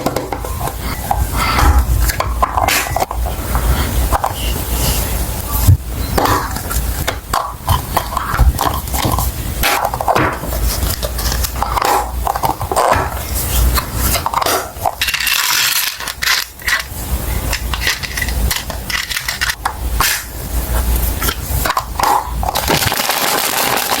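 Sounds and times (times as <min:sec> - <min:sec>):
plastic packaging crinkling: 0:21.0 - 0:24.0.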